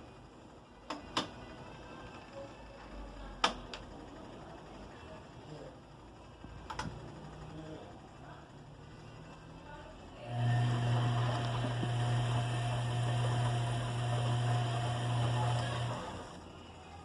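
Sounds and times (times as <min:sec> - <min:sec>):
washing machine motor hum: 0:00.0 - 0:17.0
washing machine rushing noise: 0:10.3 - 0:16.4.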